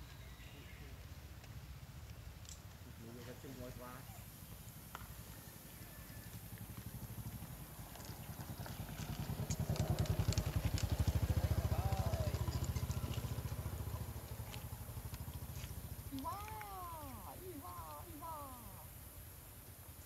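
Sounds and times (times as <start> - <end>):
small engine pulsing: 6.2 - 18.8.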